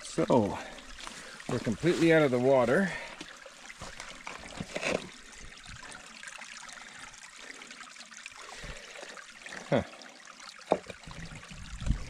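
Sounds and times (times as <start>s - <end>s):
creek trickling: 0.0s - 12.0s.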